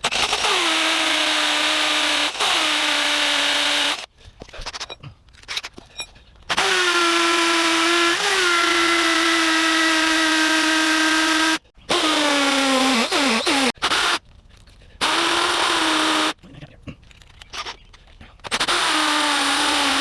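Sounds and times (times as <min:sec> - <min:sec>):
power drill boring into concrete: 0:00.0 - 0:04.1, 0:06.5 - 0:14.2, 0:15.0 - 0:16.4, 0:18.5 - 0:20.0.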